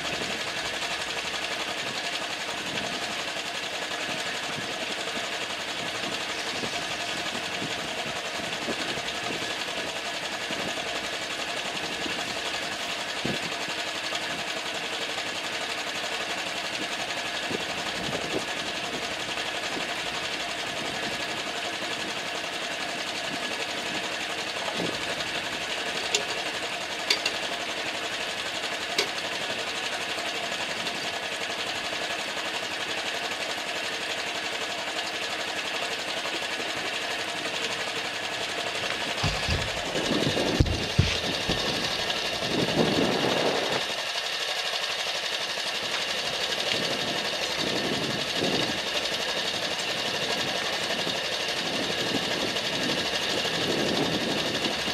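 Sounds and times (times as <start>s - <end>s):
motorcycle engine idling: 0.0s - 54.9s
knocks and handling noise: 39.2s - 39.9s, 40.6s - 41.7s.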